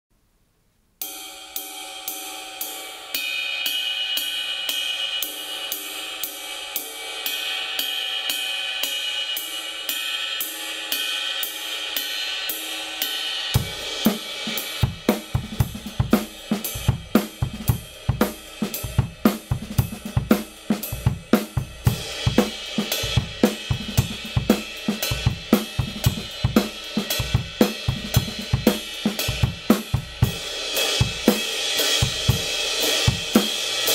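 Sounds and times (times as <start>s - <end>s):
ride cymbal pattern: 1.0s - 33.9s
kick drum and snare groove: 13.6s - 33.6s.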